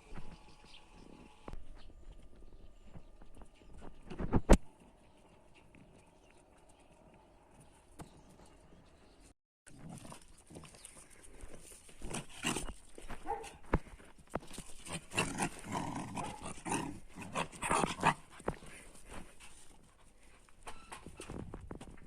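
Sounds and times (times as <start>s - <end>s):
dogs scuffling and snapping: 9.8s - 20.6s.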